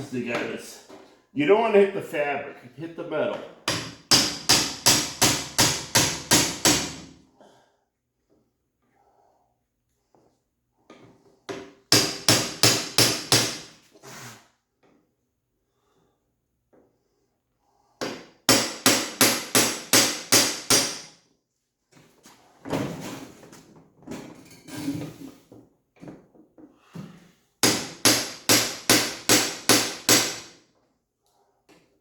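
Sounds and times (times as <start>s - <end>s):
hammer tapping on metal: 3.7s - 7.0s.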